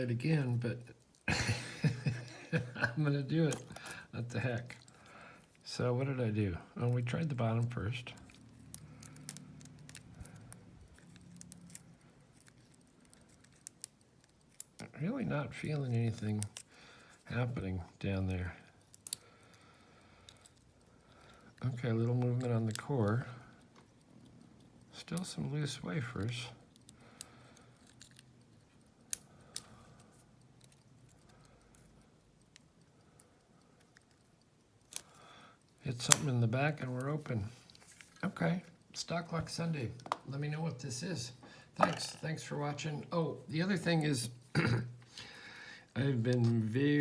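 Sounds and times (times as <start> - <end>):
lock pick clicking and scraping: 3.4 - 4.1, 7.3 - 14.8, 18.6 - 19.3, 20.2 - 25.3, 26.6 - 39.0.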